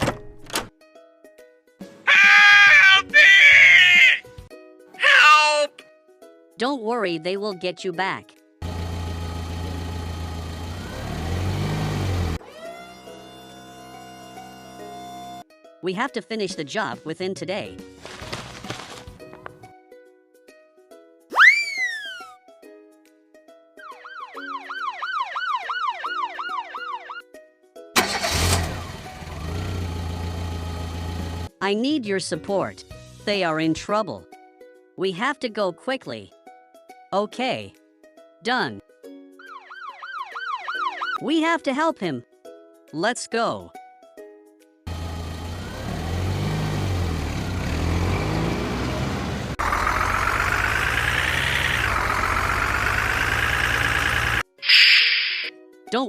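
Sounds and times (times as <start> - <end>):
background music: 0.0 - 49.1
vehicle engine running: 8.6 - 12.4, 28.3 - 31.5, 44.9 - 54.4
police siren wailing: 23.8 - 27.2, 39.4 - 41.2
engine starting and idling: 28.0 - 31.4, 49.4 - 54.4.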